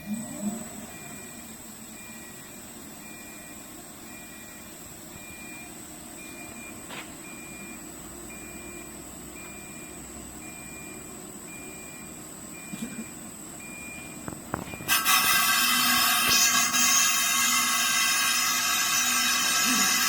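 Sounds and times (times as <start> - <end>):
electronic warning beeper: 0.0 - 12.8
steady hiss with high whine: 0.0 - 20.0.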